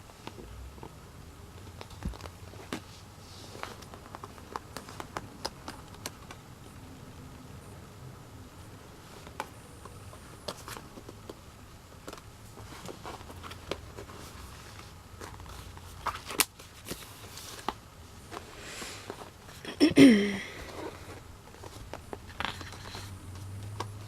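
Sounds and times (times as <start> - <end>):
cardboard and paper clicks and rustles: 1.6 - 6.5, 9.1 - 11.4, 12.0 - 19.6, 20.6 - 24.0.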